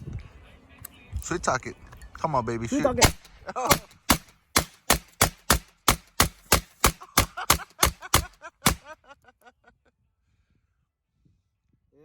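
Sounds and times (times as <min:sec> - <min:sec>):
rifle shots: 0:03.0 - 0:08.9.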